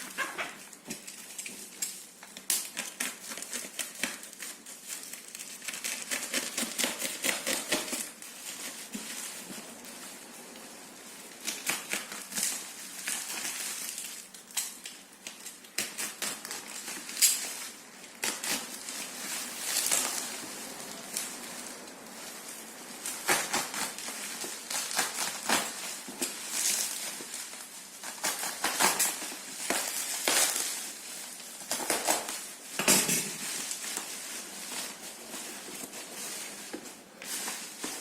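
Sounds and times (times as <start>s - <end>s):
rustling or scraping: 0.0s - 38.0s.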